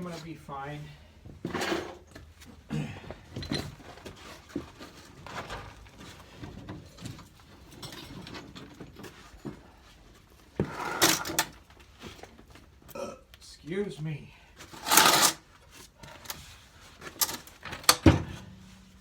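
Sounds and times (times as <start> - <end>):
metal parts knocking and scraping: 10.6 - 11.6, 14.7 - 15.4, 17.1 - 19.0.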